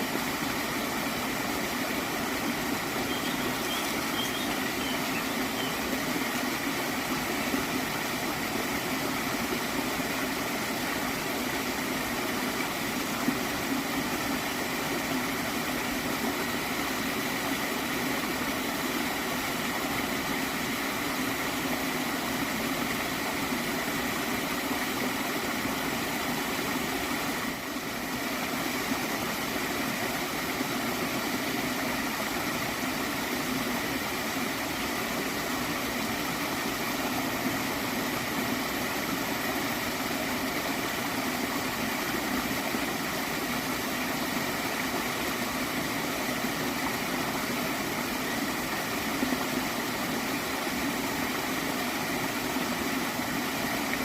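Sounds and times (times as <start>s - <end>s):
stream gurgling: 0.0s - 54.0s.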